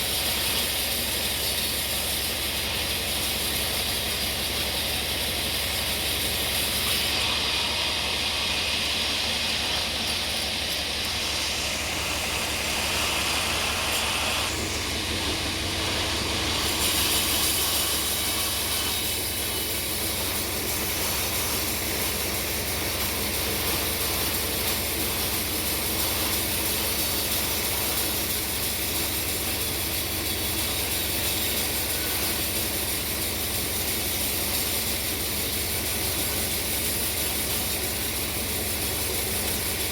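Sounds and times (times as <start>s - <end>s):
sawmill machinery running: 0.0s - 39.9s
high bright hiss: 11.2s - 14.8s.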